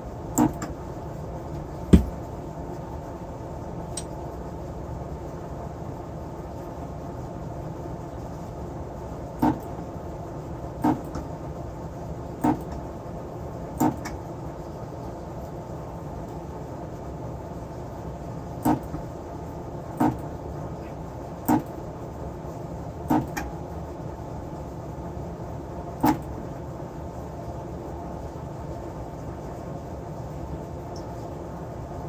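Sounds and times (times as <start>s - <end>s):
steady hum: 1.6s - 2.3s.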